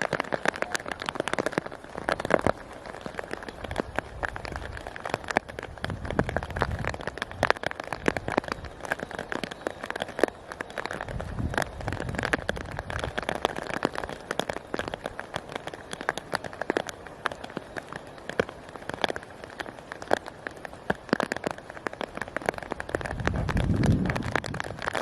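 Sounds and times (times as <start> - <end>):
rain falling: 0.0 - 25.0.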